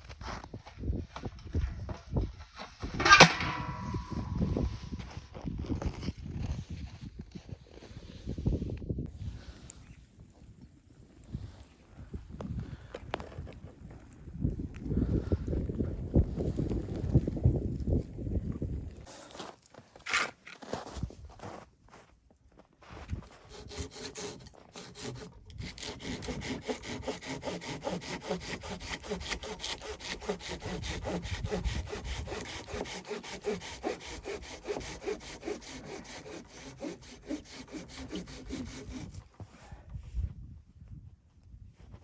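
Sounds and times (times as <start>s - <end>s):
hand saw cutting wood: 3.0s - 4.9s, 23.3s - 39.3s.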